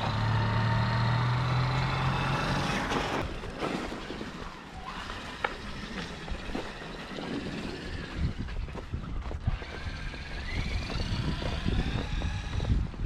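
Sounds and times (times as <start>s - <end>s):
electric motor whining: 9.4s - 13.0s.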